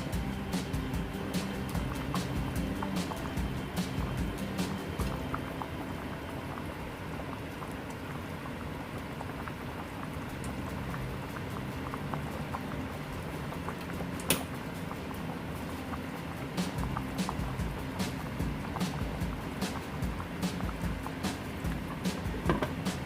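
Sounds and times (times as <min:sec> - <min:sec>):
broth boiling and bubbling: 0:00.0 - 0:23.0.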